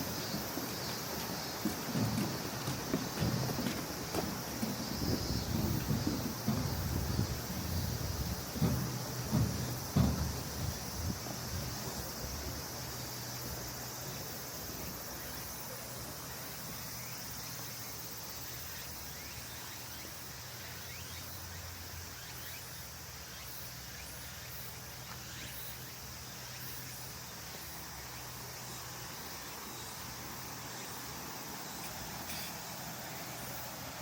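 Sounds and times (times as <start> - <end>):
background noise wash: 0.0 - 34.0
insects chirring: 0.0 - 34.0.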